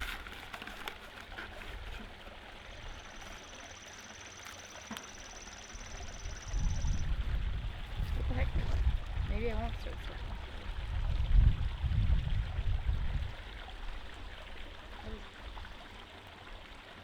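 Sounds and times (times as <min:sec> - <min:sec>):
wind noise on microphone: 0:05.8 - 0:14.7.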